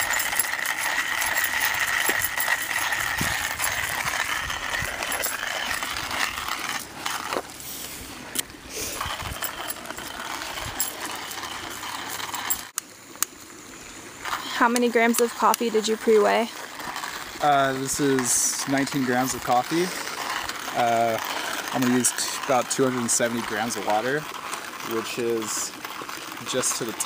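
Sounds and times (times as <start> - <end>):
small metal parts clinking: 0.0 - 7.6, 8.8 - 12.7.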